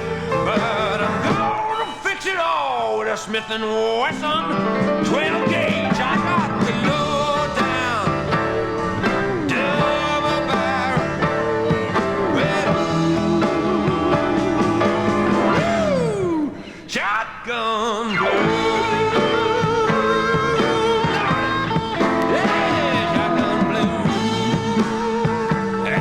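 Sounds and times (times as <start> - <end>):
country rock band playing: 0.0 - 2.3, 3.6 - 16.7, 18.1 - 26.0
lead guitar bending notes: 4.4 - 16.4, 18.1 - 26.0.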